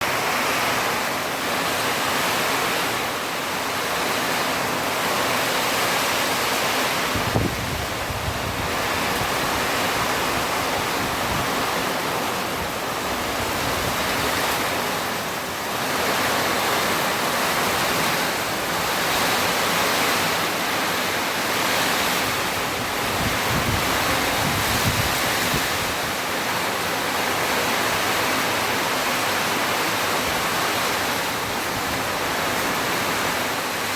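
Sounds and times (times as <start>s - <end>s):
heavy rain hissing: 0.0s - 33.9s
wind rumble on microphone: 6.6s - 15.0s, 21.6s - 26.2s.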